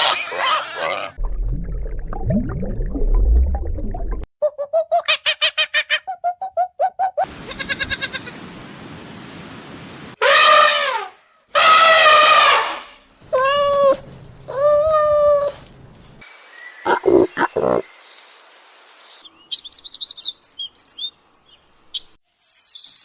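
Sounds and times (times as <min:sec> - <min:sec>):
animal drawn-out crying calls: 0:10.2 - 0:15.6.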